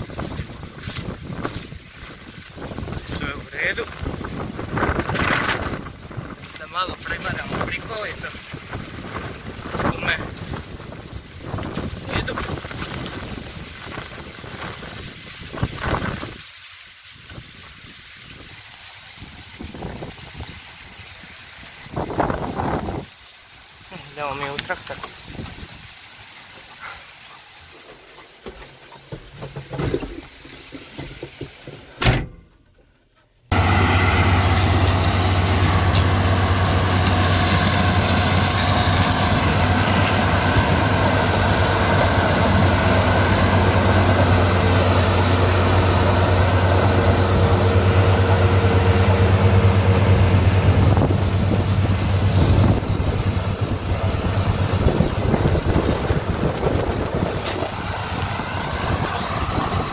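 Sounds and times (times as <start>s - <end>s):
tractor engine running: 33.5s - 59.9s.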